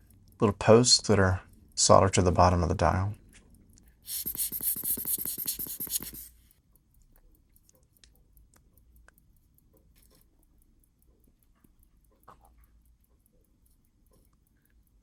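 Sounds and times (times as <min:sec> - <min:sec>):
faint small clicks: 0:03.2 - 0:15.0
hiss: 0:04.1 - 0:06.3.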